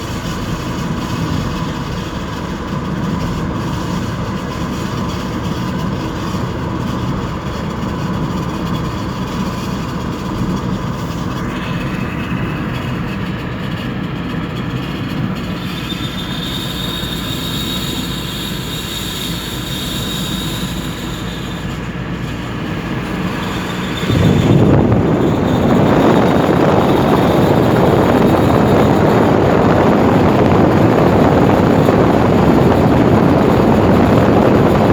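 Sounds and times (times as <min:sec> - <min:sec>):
high-pitched wheel squeal: 0:00.0 - 0:34.9
road and running noise: 0:00.0 - 0:34.9
loud rushing noise: 0:20.7 - 0:34.9.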